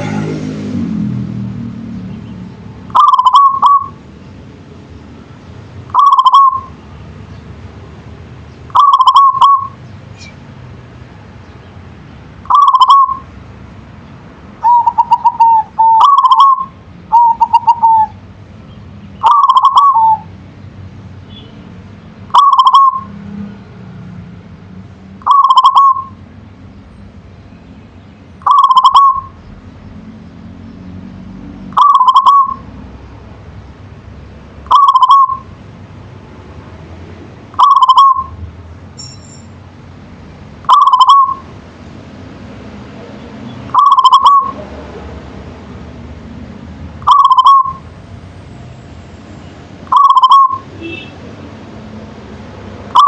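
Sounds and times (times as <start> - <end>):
dove cooing: 2.9 - 4.0, 5.9 - 6.7, 8.7 - 9.8, 12.5 - 13.2, 14.6 - 18.2, 19.2 - 20.3, 22.3 - 23.1, 25.2 - 26.2, 28.4 - 29.4, 31.7 - 32.7, 34.7 - 35.5, 37.6 - 38.3, 40.7 - 41.5, 43.7 - 44.7, 47.0 - 47.8, 49.9 - 51.0.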